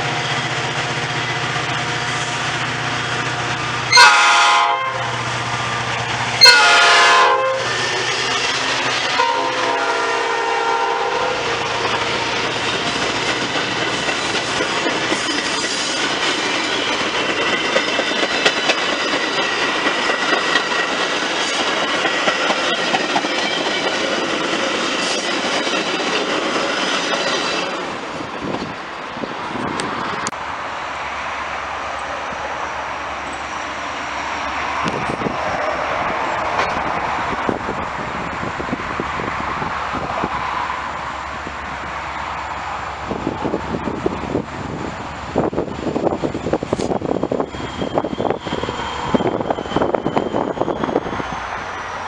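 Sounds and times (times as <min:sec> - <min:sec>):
train passing: 0:00.0 - 0:52.0
train horn blast: 0:03.9 - 0:05.2, 0:06.4 - 0:07.9, 0:09.1 - 0:11.8
wheels clicking over rail joints: 0:11.8 - 0:27.9.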